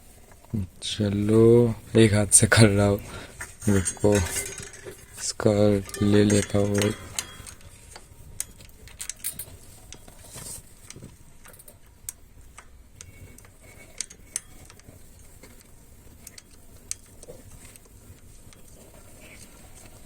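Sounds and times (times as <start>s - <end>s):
small metal clicks and ticks: 3.6s - 20.0s.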